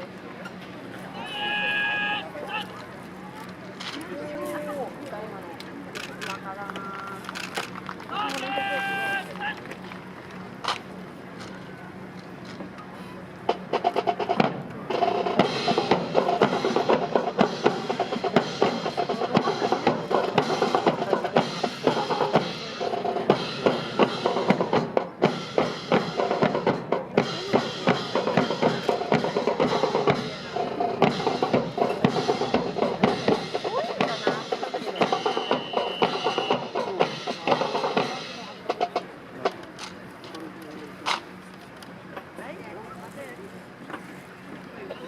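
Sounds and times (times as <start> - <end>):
marching snare and bass drums: 13.3 - 40.3.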